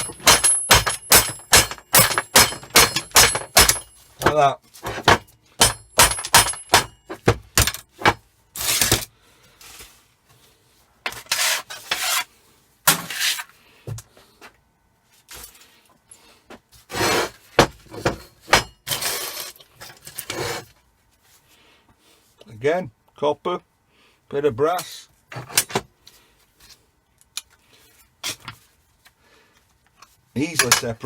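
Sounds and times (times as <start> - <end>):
metal scrap scraping and clinking: 0.0 - 4.1, 4.8 - 9.1, 11.1 - 12.3, 12.9 - 13.5, 16.9 - 20.7, 30.4 - 31.0
sharp knocks on metal: 0.0 - 8.2, 17.6 - 18.8.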